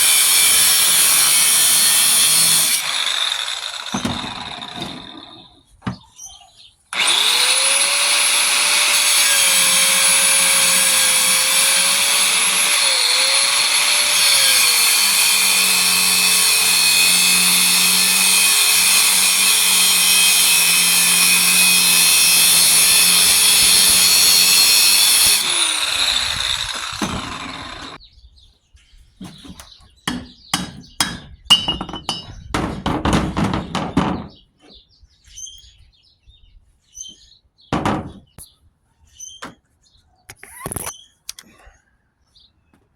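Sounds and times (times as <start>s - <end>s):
power tool cutting steel: 0.0s - 5.5s, 6.9s - 28.0s.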